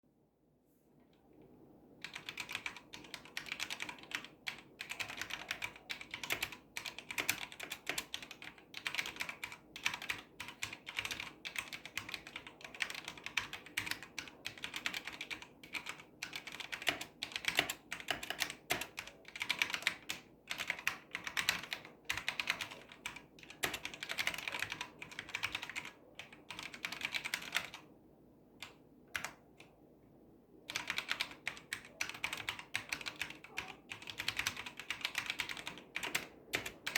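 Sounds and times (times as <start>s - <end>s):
mechanical keyboard typing: 2.0s - 27.8s, 28.6s - 29.7s, 30.7s - 36.9s.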